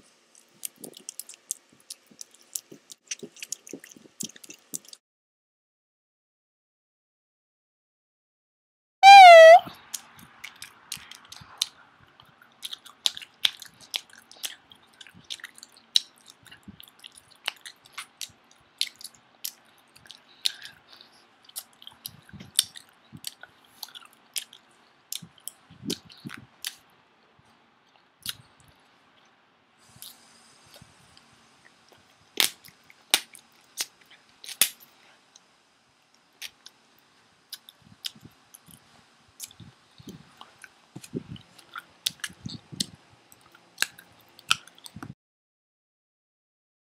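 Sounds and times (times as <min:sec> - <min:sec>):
person chewing gum noisily: 0:00.3 - 0:05.0, 0:09.9 - 0:26.8, 0:27.9 - 0:29.4, 0:37.5 - 0:45.1.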